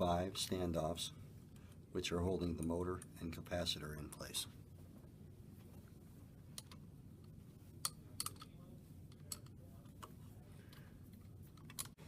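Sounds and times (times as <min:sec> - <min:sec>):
wrench clicking and tapping on metal: 0:07.8 - 0:08.5.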